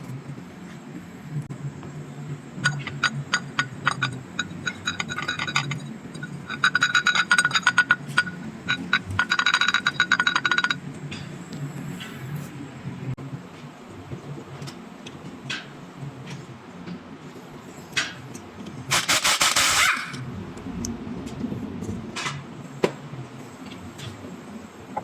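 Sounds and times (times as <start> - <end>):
low steady hum: 0.0 - 18.9, 20.0 - 25.0
rapid metallic clicking: 2.6 - 10.8.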